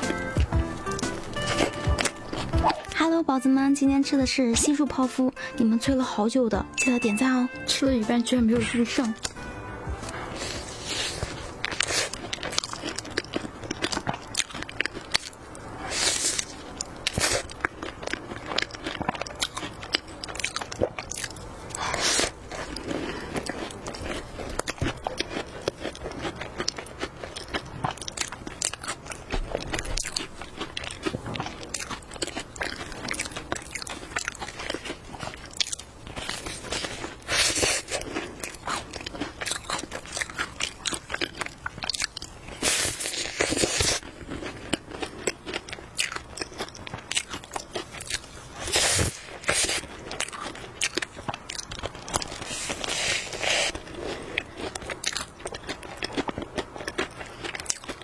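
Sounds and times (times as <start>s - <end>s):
pastry shell crunching: 0.0s - 2.9s, 9.1s - 58.0s
chewing: 0.0s - 3.0s, 9.0s - 58.0s.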